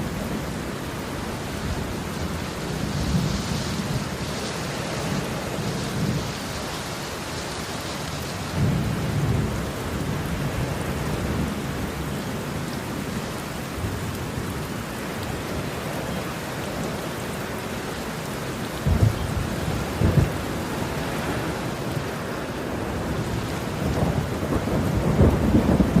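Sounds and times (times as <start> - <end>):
heavy rain pouring: 0.0 - 26.0
thunder rumbling: 8.4 - 14.8, 18.7 - 26.0.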